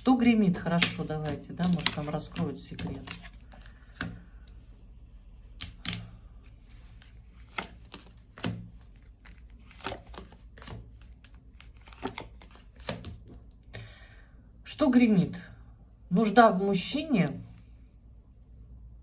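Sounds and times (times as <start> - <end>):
cards shuffling and flicking: 0.6 - 4.6, 5.5 - 13.4.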